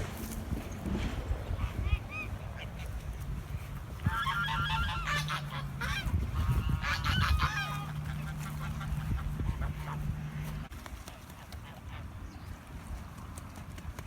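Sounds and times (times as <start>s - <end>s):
wind rumbling on microphone: 0.0s - 10.8s
geese honking: 1.4s - 10.7s.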